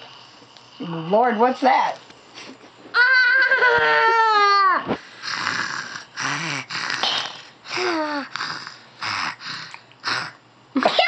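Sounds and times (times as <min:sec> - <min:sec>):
girl making pretend snores: 0:04.7 - 0:10.4.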